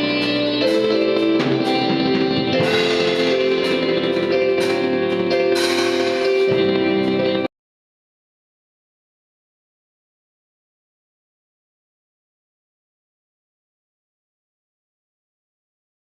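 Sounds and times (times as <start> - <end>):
guitar strumming music: 0.0 - 7.5.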